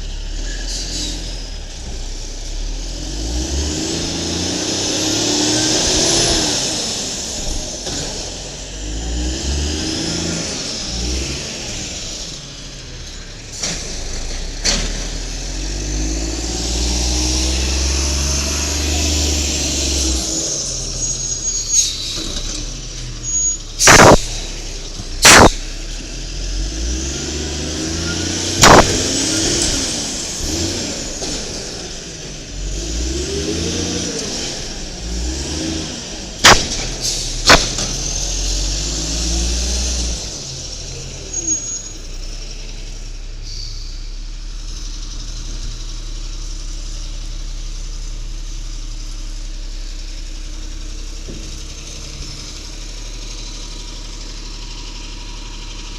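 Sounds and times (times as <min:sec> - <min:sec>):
truck engine revving and idling: 0:00.0 - 0:55.9
sharp loud bangs: 0:23.8 - 0:25.9, 0:28.6 - 0:29.4, 0:36.4 - 0:38.2.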